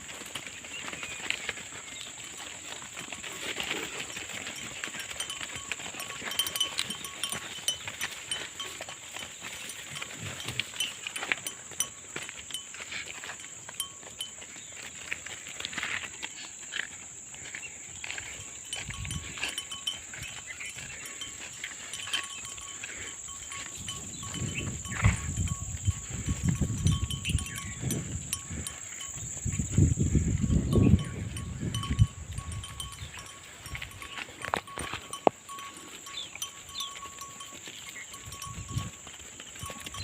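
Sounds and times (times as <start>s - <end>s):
bell-like clinks: 3.9s - 14.4s, 18.3s - 29.2s, 30.4s - 40.0s.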